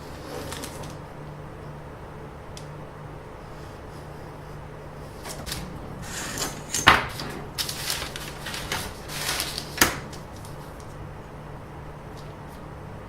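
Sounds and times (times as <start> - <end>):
rustling handling noise: 0.0 - 1.1, 5.2 - 11.4
low hum: 0.0 - 13.0.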